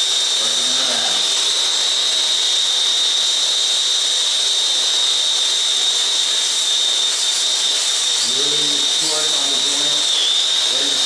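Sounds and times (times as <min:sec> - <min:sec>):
torch flame hissing and whistling: 0:00.0 - 0:11.0.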